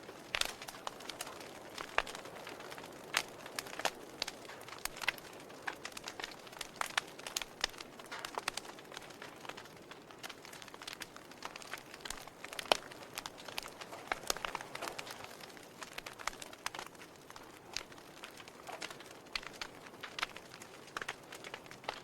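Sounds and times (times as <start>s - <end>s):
soft fire hiss: 0.0s - 22.0s
wood fire crackling and popping: 0.0s - 22.0s.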